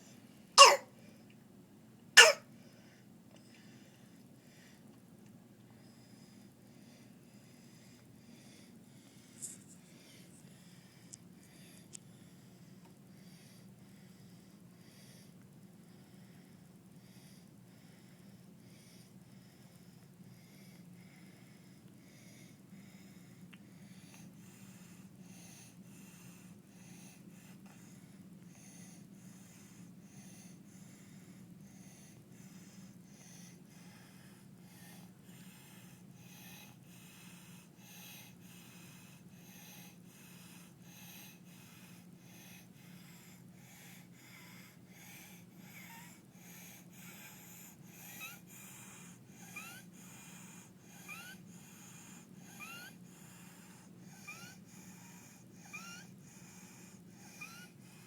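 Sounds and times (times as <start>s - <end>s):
toddler breathing with stridor: 0.6s - 0.8s, 2.2s - 2.4s
steady low hum: 1.9s - 58.0s.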